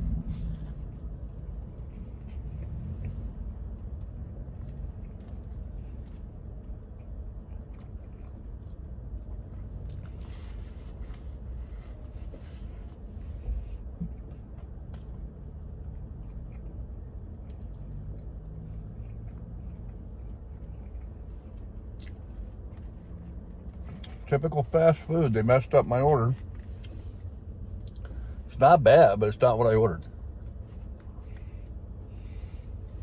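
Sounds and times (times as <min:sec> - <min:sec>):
low rumble: 0:00.0 - 0:24.3
man chewing: 0:00.4 - 0:24.2.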